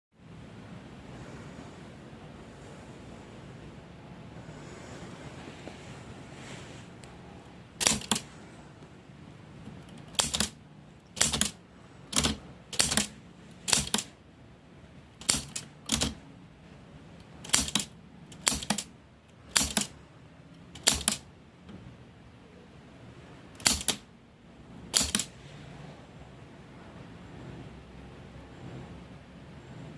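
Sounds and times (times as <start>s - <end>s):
mechanical typewriter key clacks: 7.8s - 8.2s, 9.8s - 14.1s, 15.2s - 16.2s, 17.4s - 18.9s, 19.5s - 20.0s, 20.7s - 21.3s, 23.6s - 24.1s, 24.9s - 25.3s.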